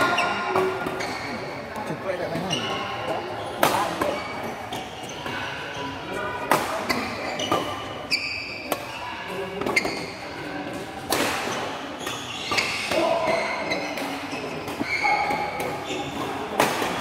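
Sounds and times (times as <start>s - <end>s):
shoes squeaking on floor: 0.0s - 1.6s, 2.2s - 6.0s, 6.8s - 10.6s, 11.7s - 16.5s
racket hitting shuttlecock: 10.7s - 17.0s.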